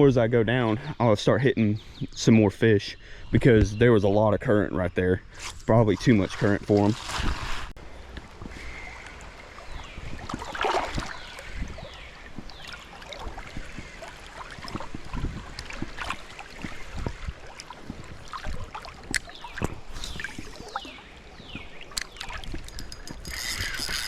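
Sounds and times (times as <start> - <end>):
water sloshing around wading legs: 5.9 - 24.0
small splashes and knocks: 9.8 - 24.0.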